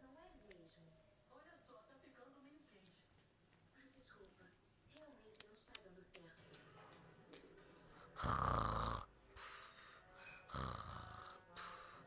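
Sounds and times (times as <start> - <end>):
person snoring: 8.1 - 9.1, 10.4 - 12.0.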